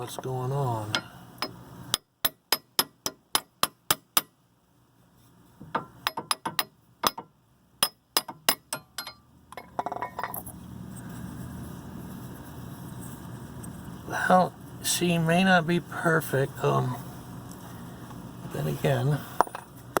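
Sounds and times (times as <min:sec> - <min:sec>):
small hammer tapping metal: 0:00.9 - 0:04.4, 0:05.6 - 0:10.4.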